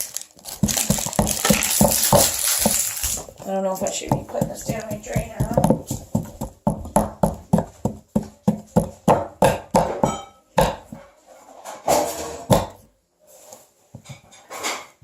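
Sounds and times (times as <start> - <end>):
digging tool chipping plaster: 0.5 - 10.1.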